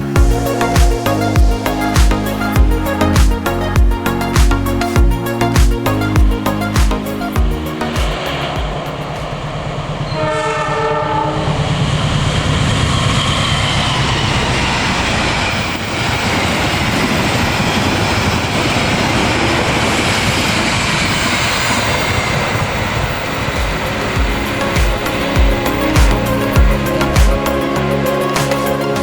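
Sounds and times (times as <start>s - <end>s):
train rushing by: 6.6s - 29.0s
locomotive horn blast: 10.0s - 11.5s.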